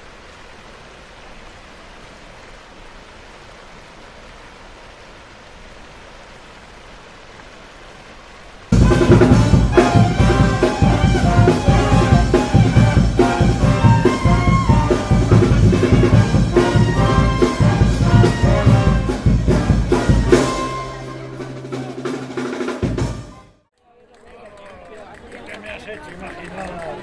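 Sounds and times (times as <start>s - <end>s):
drum beat: 8.7s - 23.6s
brass music: 8.7s - 23.7s.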